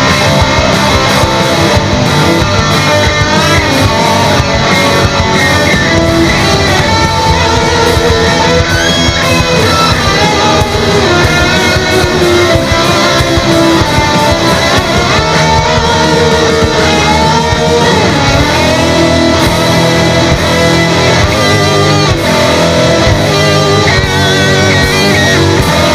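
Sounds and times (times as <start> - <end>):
electric guitar melody: 0.0 - 25.9
strummed guitar chords: 0.0 - 25.9.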